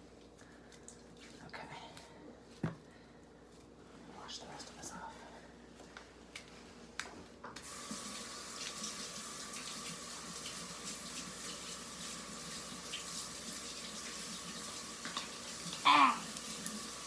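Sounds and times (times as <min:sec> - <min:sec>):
water running into a sink: 0:07.6 - 0:17.0.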